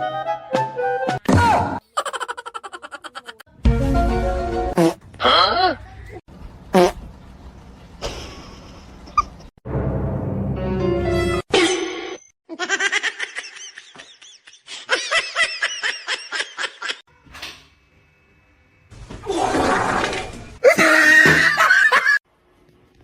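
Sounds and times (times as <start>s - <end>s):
person laughing: 1.9s - 3.4s, 20.6s - 22.2s.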